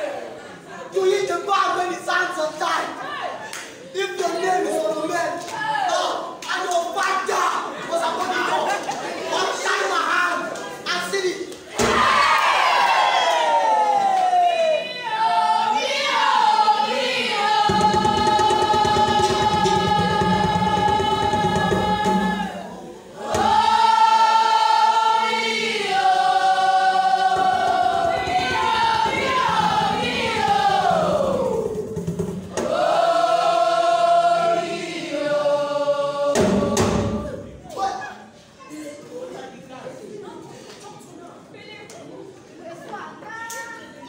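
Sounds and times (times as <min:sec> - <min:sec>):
choir singing: 0:14.3 - 0:37.7.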